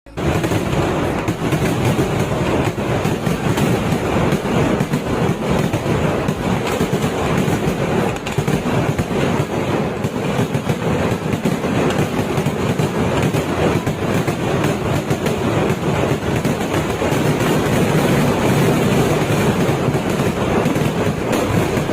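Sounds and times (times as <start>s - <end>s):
firecrackers rapid bangs: 0.1s - 21.9s.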